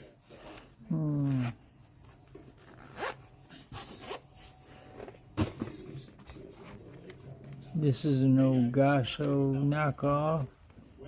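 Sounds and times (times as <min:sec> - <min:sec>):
zipper rasping: 0:02.4 - 0:04.2.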